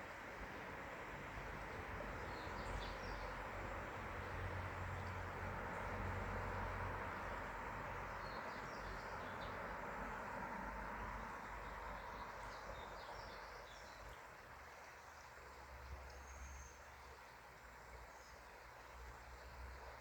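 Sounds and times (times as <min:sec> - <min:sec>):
stream rushing: 0:00.0 - 0:12.7.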